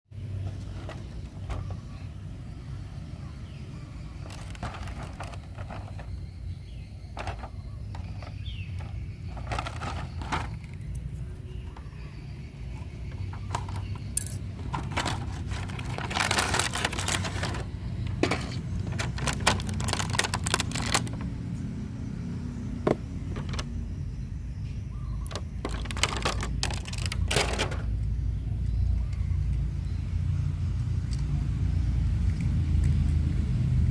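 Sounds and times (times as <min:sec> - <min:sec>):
scattered clicks and rattles: 0:04.2 - 0:06.2, 0:07.1 - 0:11.0, 0:13.1 - 0:21.3, 0:25.2 - 0:27.9.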